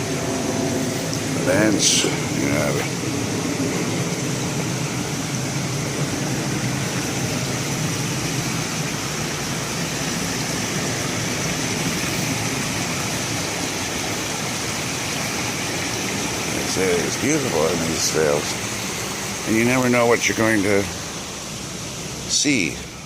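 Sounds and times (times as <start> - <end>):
waterfall rushing: 0.0 - 23.0.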